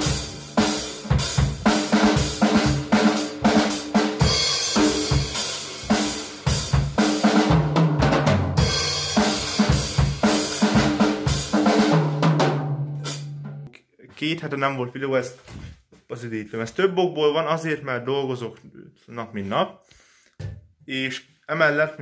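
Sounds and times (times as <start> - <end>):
kick and snare drums: 0.0 - 13.7.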